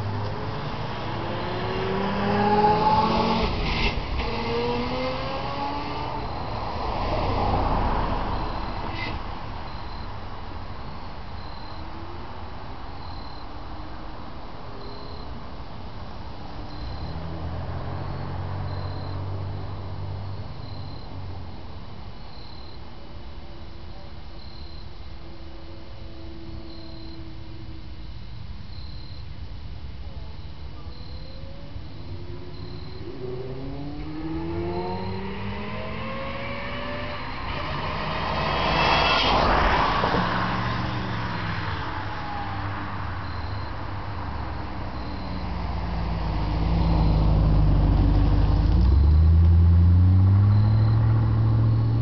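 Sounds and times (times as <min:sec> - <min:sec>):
faint high chirps: 0:14.7 - 0:15.4, 0:30.0 - 0:37.8, 0:50.4 - 0:52.0
whining tones rising in pitch: 0:30.1 - 0:43.8.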